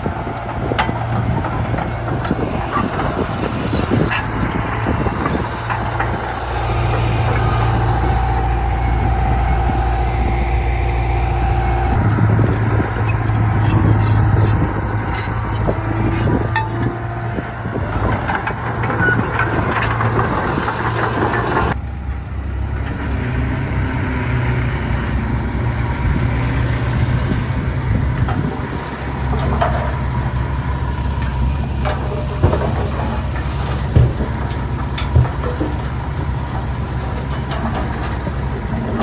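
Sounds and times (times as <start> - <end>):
engine clatter and hiss: 0.0 - 39.0
heavy diesel engine droning: 0.0 - 39.0.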